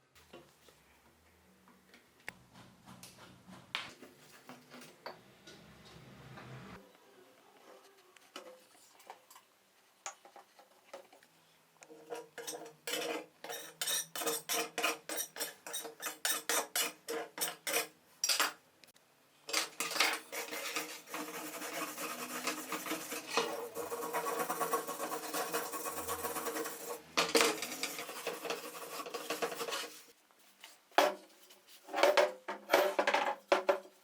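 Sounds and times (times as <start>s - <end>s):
scraping strokes on metal: 12.0s - 17.9s, 19.6s - 30.2s
continuous rubbing on metal: 19.7s - 30.7s.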